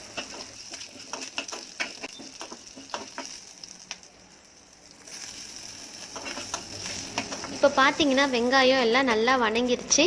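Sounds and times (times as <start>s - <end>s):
food sizzling in oil: 0.0s - 10.0s
spoon stirring and tapping pan: 0.1s - 3.4s.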